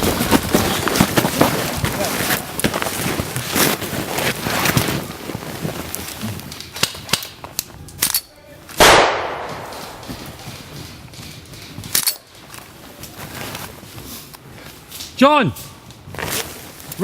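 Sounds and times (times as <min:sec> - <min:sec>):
airsoft gun shots: 0:08.8 - 0:10.0.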